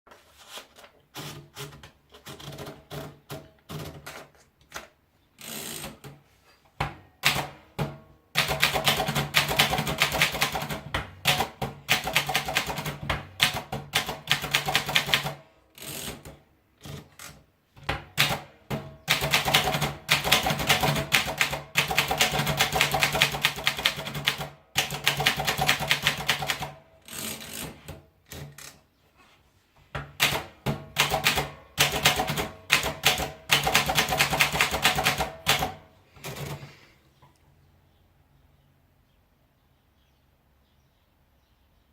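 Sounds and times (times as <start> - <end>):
manual typewriter typing: 1.1 - 6.2, 7.2 - 28.8, 30.1 - 36.8.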